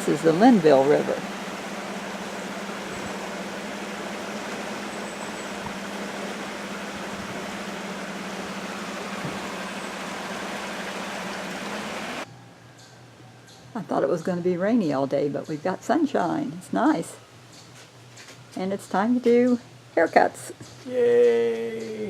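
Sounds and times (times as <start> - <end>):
river rushing: 0.0 - 12.2
low hum: 0.0 - 14.6.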